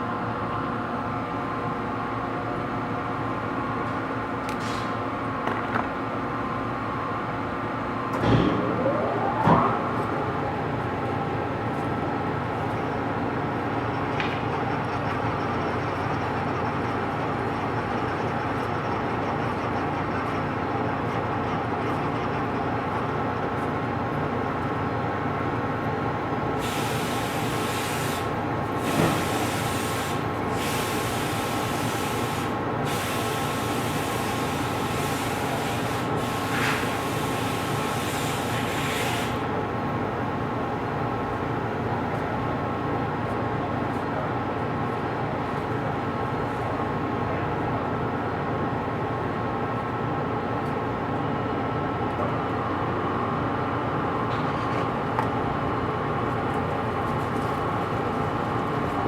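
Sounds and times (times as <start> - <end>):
hiss bursts: 26.6 - 39.4.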